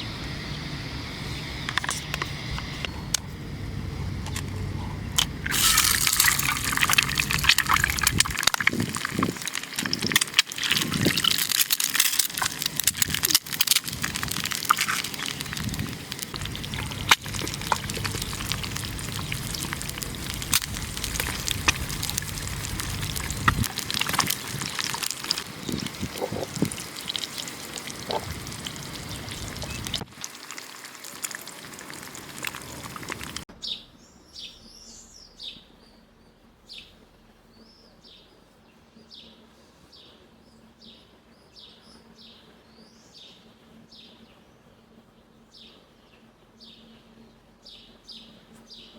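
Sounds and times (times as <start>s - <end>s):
hiss with clicks and pops: 5.1s - 33.4s
small bird chirping: 14.8s - 23.6s.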